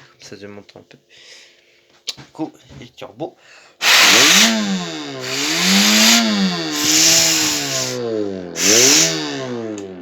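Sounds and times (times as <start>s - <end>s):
synthesized car engine revving: 3.8s - 10.0s
turbo-like hiss: 5.2s - 8.0s, 8.6s - 9.3s.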